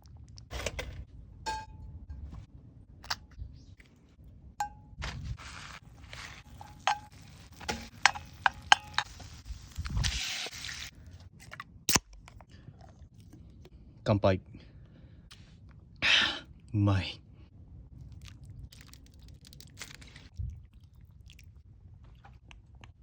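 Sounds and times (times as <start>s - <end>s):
metal utensils clinking: 6.5s - 9.1s.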